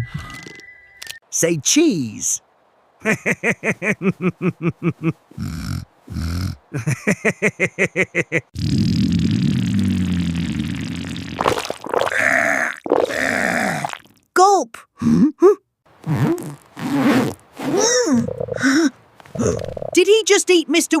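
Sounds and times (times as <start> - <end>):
low grunting growl: 17.8 - 20.0.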